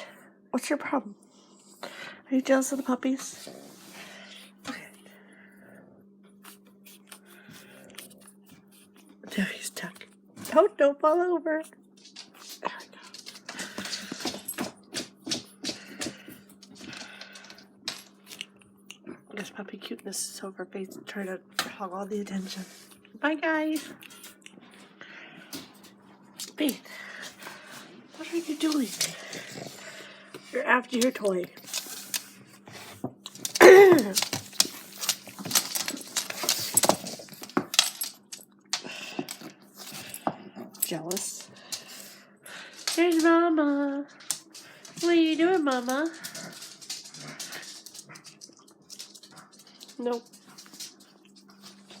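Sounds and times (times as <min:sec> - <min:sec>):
puppies clicking and scrabbling: 0:06.4 - 0:19.0, 0:23.7 - 0:52.0.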